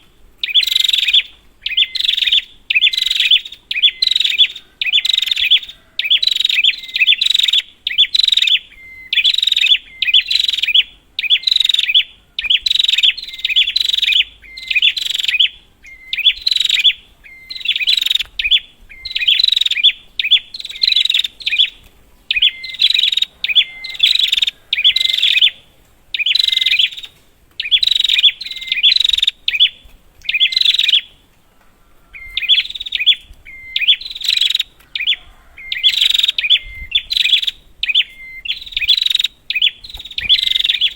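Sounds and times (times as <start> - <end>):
bird chirping rapidly: 0.0 - 31.2, 32.1 - 40.9.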